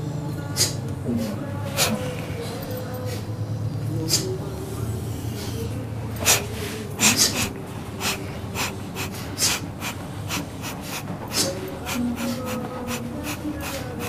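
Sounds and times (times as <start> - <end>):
steady low hum: 0.0 - 14.0
person breathing in sharp puffs: 1.7 - 2.1, 4.0 - 4.4, 6.2 - 14.0.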